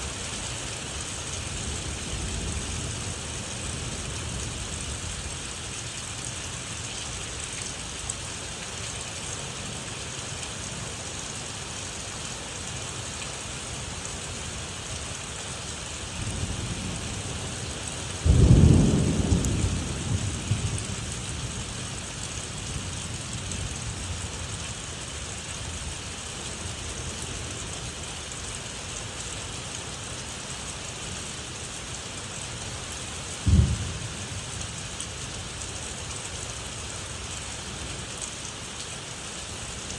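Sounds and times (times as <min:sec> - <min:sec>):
rain hissing: 0:00.0 - 0:39.9
thunder rumbling: 0:16.2 - 0:24.2, 0:33.4 - 0:35.5.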